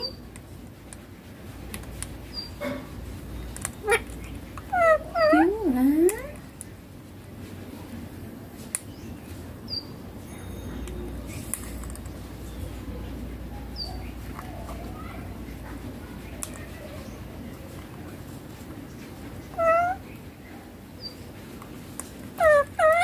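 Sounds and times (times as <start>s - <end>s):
parakeet squawking: 3.8s - 5.7s, 19.5s - 20.0s, 22.4s - 23.0s.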